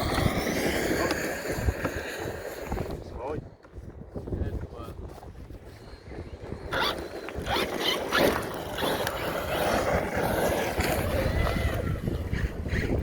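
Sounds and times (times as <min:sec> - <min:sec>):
wind on microphone: 0:00.0 - 0:13.0
toy truck rattling over stones: 0:06.6 - 0:12.9.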